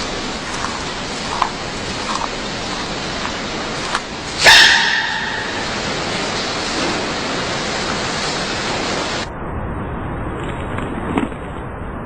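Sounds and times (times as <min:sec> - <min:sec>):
steady background hiss: 0:00.0 - 0:09.3.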